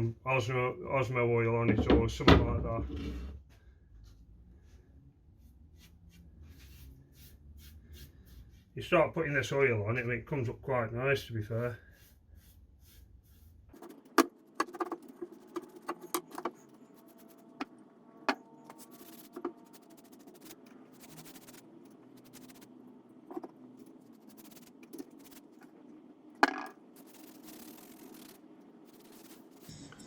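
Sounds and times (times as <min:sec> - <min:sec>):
low steady hum: 0:00.0 - 0:30.0
objects clicking and knocking: 0:26.4 - 0:26.8.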